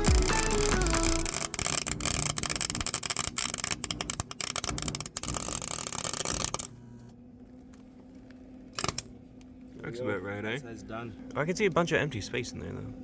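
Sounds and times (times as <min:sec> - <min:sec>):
welder arc crackling and spitting: 0:00.0 - 0:06.8.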